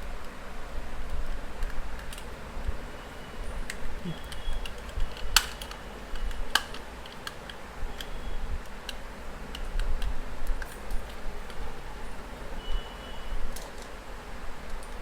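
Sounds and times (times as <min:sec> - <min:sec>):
plastic mouse parts clicking: 0:03.6 - 0:08.2.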